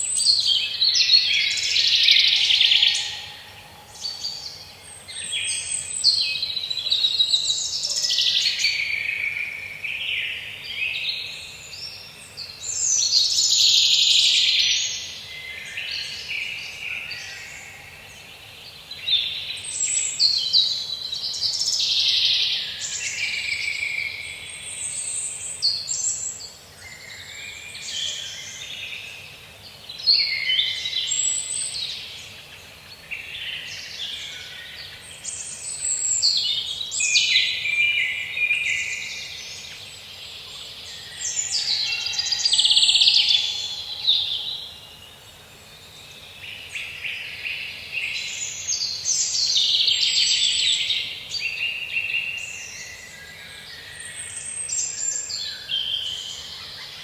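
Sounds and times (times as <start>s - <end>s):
faint background hiss: 0.0s - 57.0s
forest birds singing: 0.0s - 57.0s.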